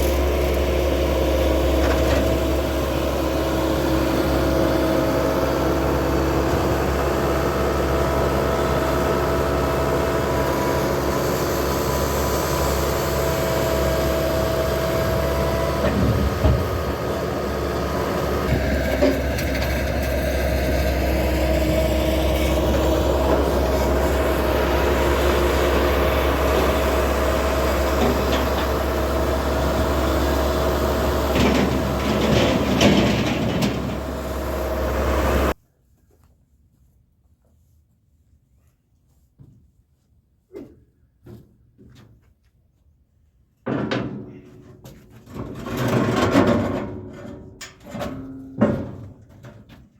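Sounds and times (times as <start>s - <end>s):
vehicle engine and road hum: 0.0s - 35.6s.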